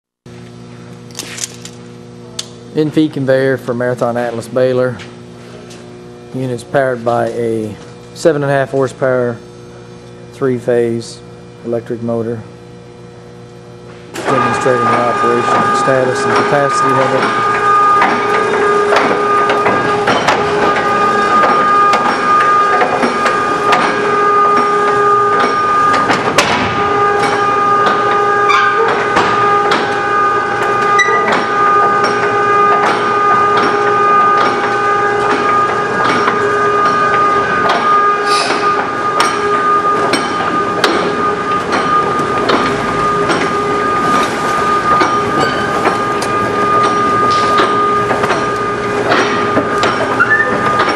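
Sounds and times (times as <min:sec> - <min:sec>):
conveyor motor whine: 0:00.3 - 0:50.9
conveyor clanks and rattles: 0:14.0 - 0:50.9.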